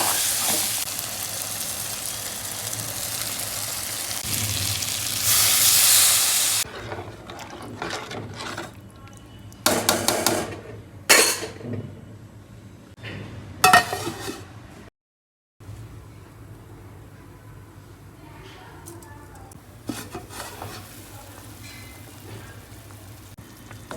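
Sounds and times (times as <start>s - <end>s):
frying sizzle in pan: 0.0s - 6.7s, 19.6s - 23.9s
spoon scraping metal pot: 6.6s - 8.8s, 13.7s - 14.5s, 19.9s - 21.0s.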